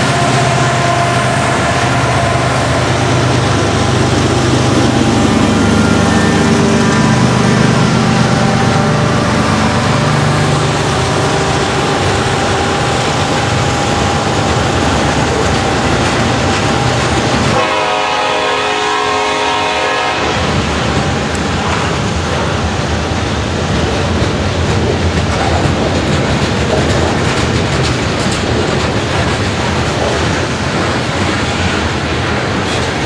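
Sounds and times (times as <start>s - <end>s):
multi-pitch train horn: 0.0s - 21.2s
train rumbling past: 0.0s - 33.0s.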